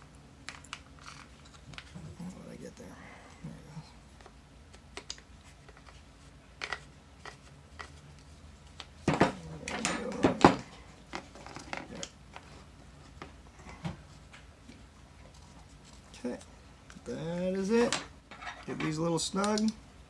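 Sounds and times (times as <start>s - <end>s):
clatter and rattling of parts: 9.0s - 12.6s
light clicks of small parts: 18.8s - 19.8s.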